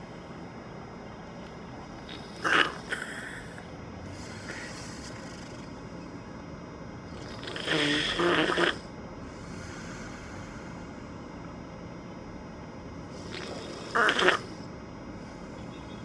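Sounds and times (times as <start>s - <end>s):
loud snore: 2.1s - 5.7s, 7.1s - 8.9s, 13.2s - 14.6s.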